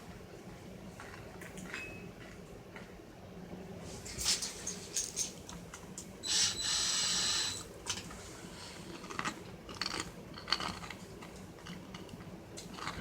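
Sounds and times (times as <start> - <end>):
power drill whining: 6.2 - 7.7.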